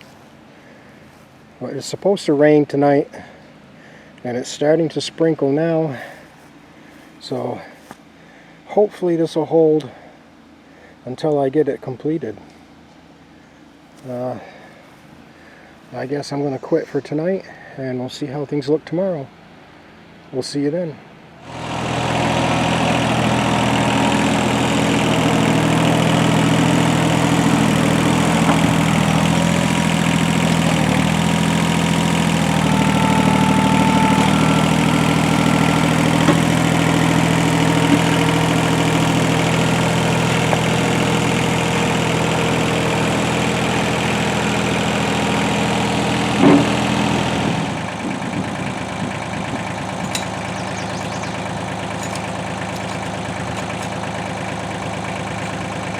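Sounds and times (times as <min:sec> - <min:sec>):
tractor engine running: 0:21.4 - 0:55.9.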